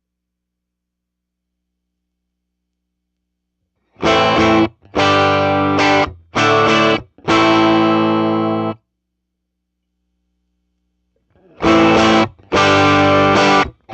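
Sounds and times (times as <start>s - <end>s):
electric guitar chords: 4.0s - 8.8s, 11.4s - 13.9s.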